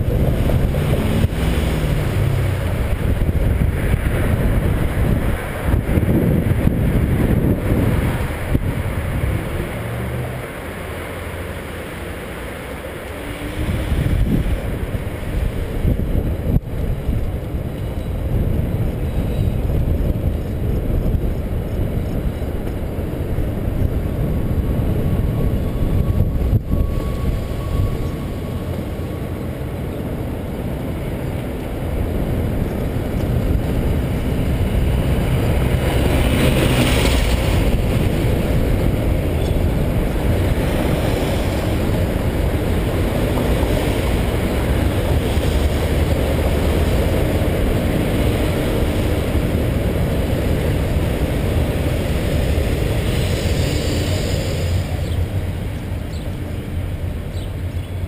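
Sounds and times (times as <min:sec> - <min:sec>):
wind buffeting microphone: 0:00.0 - 0:10.5, 0:13.2 - 0:58.0.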